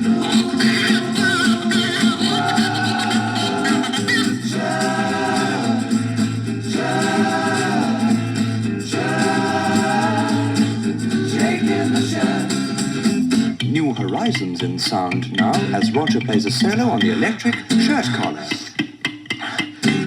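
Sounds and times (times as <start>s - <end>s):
band music with group singing: 0.0s - 13.6s.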